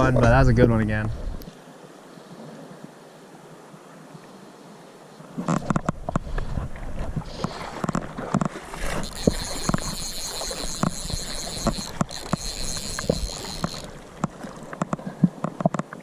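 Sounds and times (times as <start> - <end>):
river water flowing: 1.2 - 16.0
handling knocks and taps: 7.4 - 16.0
steady high buzz: 9.0 - 14.0.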